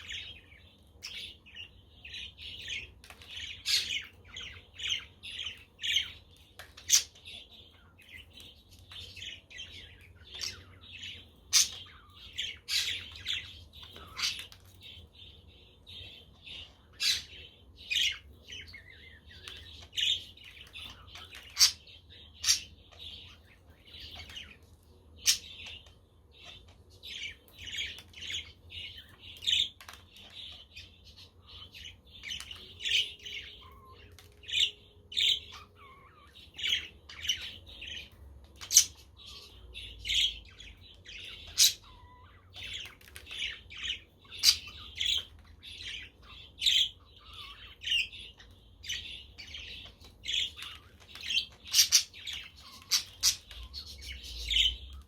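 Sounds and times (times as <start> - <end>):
budgerigars chirping: 0.0 - 55.0
budgerigars squawking: 11.5 - 14.5, 50.3 - 55.0.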